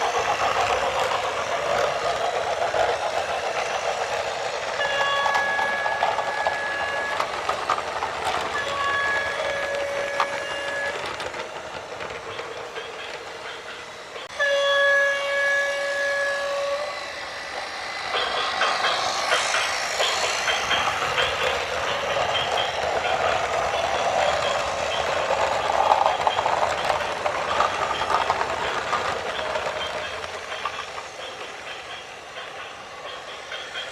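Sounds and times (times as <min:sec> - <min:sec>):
vehicle horn blasts: 0:14.4 - 0:16.8.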